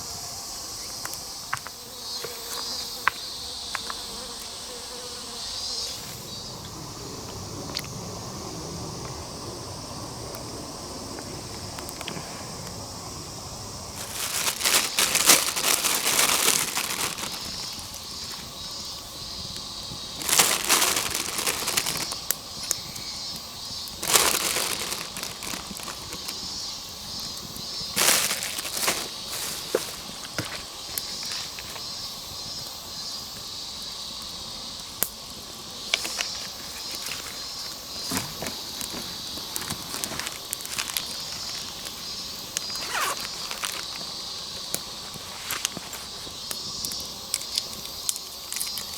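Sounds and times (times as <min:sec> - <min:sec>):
dry leaves and twigs crunching: 0:13.7 - 0:31.9, 0:35.9 - 0:48.9.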